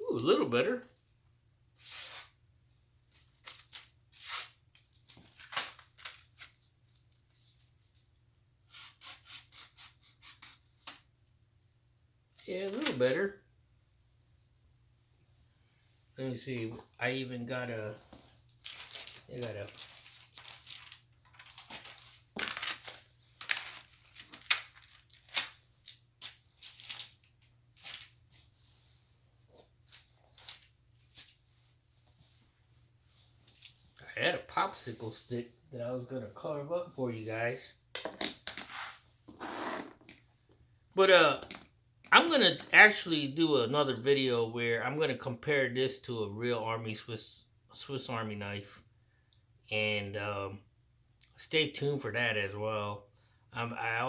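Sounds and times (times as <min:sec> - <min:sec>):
rustling and crinkling: 0:17.9 - 0:34.0.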